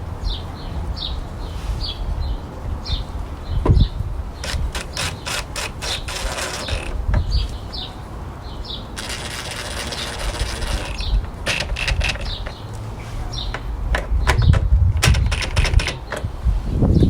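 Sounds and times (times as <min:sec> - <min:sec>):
faint birds chirping: 0:00.2 - 0:14.7
hand ratchet clicking: 0:04.4 - 0:07.6, 0:09.0 - 0:12.7.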